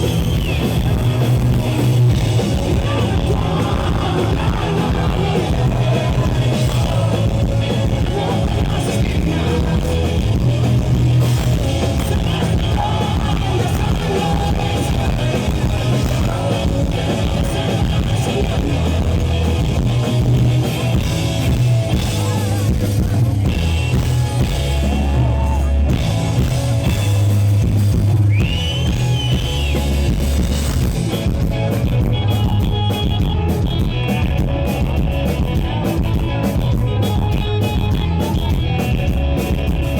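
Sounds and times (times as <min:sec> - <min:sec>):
live rock band playing: 0:00.0 - 0:39.9
person singing: 0:00.7 - 0:20.2.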